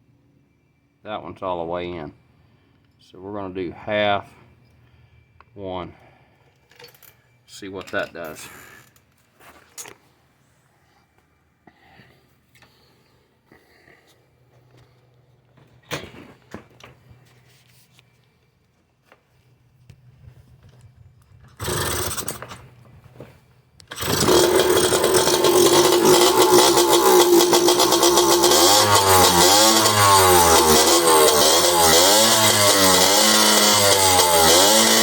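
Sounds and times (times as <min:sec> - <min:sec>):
two-stroke dirt bike engine: 0:21.5 - 0:22.8, 0:23.9 - 0:35.0.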